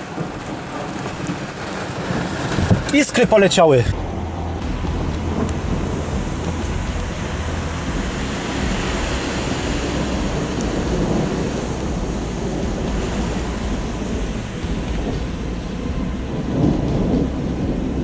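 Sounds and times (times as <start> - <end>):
rain downpour: 0.0 - 18.0
wind: 0.0 - 18.0
low rumble: 3.9 - 18.0.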